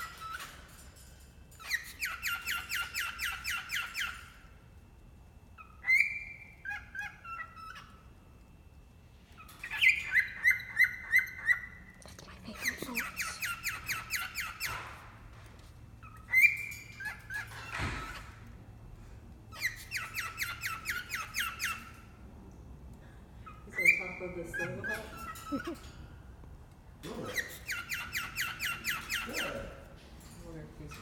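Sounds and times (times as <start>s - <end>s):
cockatiel chirping: 0.0s - 0.7s, 1.6s - 4.5s, 5.6s - 8.1s, 9.4s - 11.8s, 12.5s - 14.9s, 16.0s - 18.3s, 19.5s - 22.1s, 27.2s - 29.8s.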